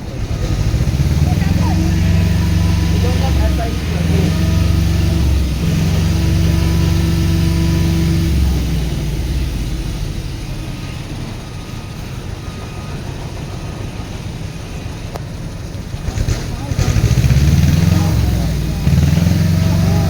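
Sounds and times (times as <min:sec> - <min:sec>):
heavy vehicle engine humming: 0:00.0 - 0:20.0
traffic rumble: 0:00.0 - 0:20.0.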